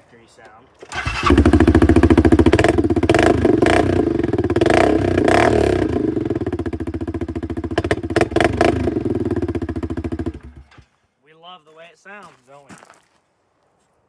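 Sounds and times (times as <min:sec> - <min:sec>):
atv engine revving: 0:00.8 - 0:10.8.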